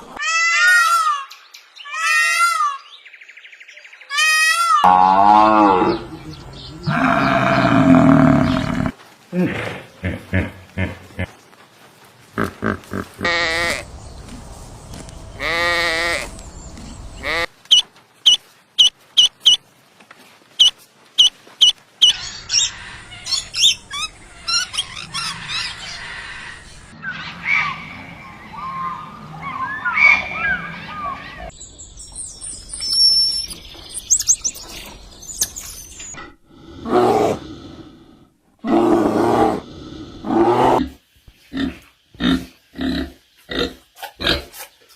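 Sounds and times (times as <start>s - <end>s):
animal quavering bleat: 4.1s - 11.0s, 12.4s - 13.8s, 15.4s - 16.3s
animal grunting: 4.8s - 11.3s, 12.4s - 13.8s, 36.4s - 40.9s
bird chirping whistles: 32.0s - 36.2s.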